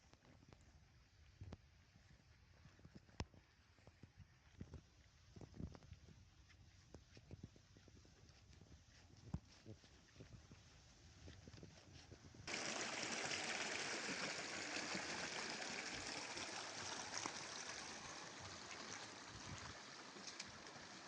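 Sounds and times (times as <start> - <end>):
stream water flowing: 12.5 - 21.0.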